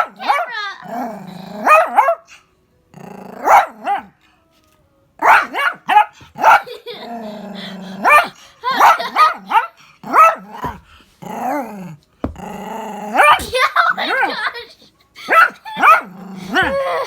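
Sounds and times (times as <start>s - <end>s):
dog barking: 0.0s - 0.5s, 1.6s - 2.3s, 3.4s - 4.1s, 5.2s - 6.8s, 8.0s - 10.8s, 15.3s - 16.8s
dog growling: 0.8s - 1.8s, 2.9s - 3.6s, 6.7s - 13.4s, 15.4s - 17.0s.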